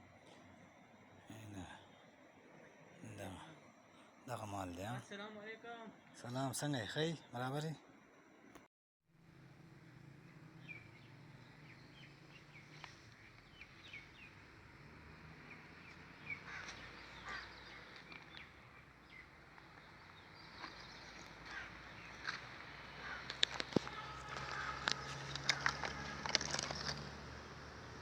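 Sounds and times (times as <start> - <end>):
small birds chirping: 9.8 - 27.1.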